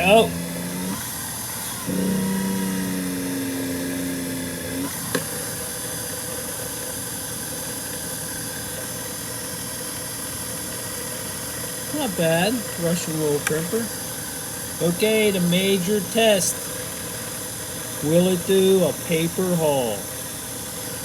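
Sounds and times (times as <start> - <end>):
drill press motor running: 0.0 - 21.0
higher tone: 1.9 - 4.2.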